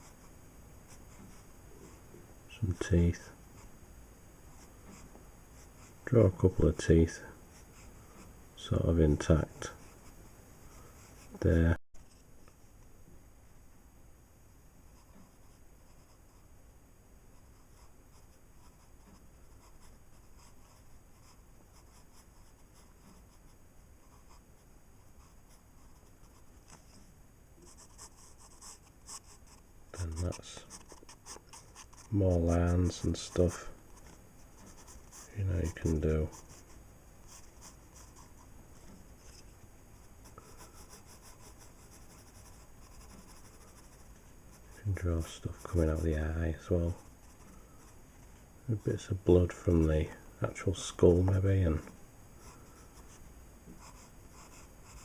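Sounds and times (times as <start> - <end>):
pencil scratching on paper: 27.6 - 48.0, 53.8 - 55.0.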